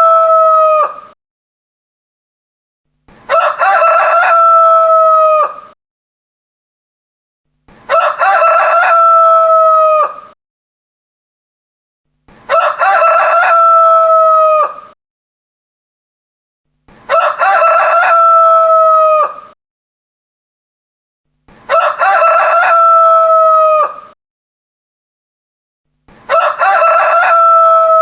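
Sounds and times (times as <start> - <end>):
rooster crowing: 0.0 - 1.1, 3.3 - 5.8, 7.9 - 10.4, 12.5 - 15.0, 17.1 - 19.6, 21.7 - 24.2, 26.3 - 28.0.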